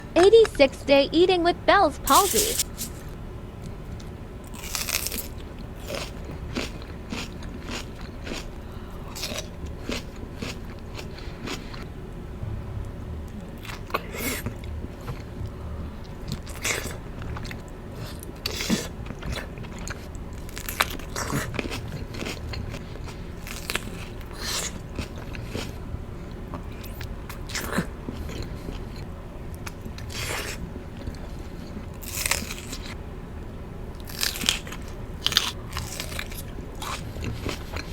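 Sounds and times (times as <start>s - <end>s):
crunchy chewing: 2.2s - 11.9s, 13.6s - 29.0s, 29.6s - 33.0s, 33.9s - 37.9s.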